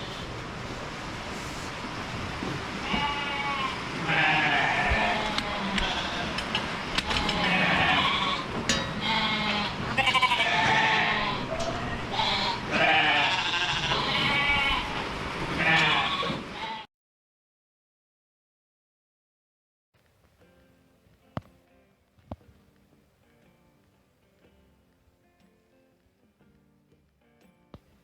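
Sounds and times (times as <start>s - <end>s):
sheep bleating: 2.8s - 6.4s, 7.0s - 15.0s, 15.6s - 16.9s.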